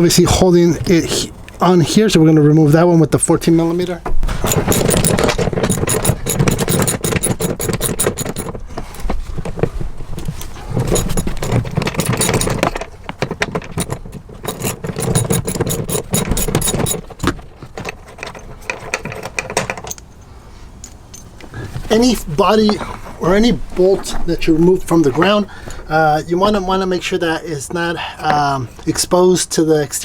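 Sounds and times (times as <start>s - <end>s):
metal handling rattles: 3.8s - 25.4s
ratchet wrench clicking: 4.4s - 8.6s, 10.9s - 12.8s, 13.8s - 17.4s.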